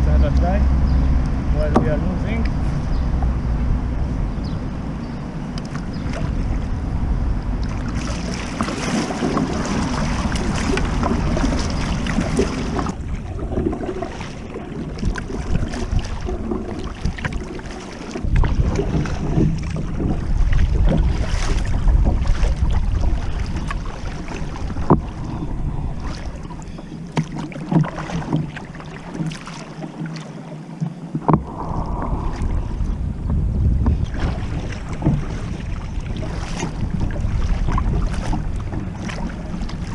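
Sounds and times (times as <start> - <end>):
wind buffeting microphone: 0.0 - 26.9, 31.2 - 39.9
water lapping against kayak hull: 0.0 - 39.9.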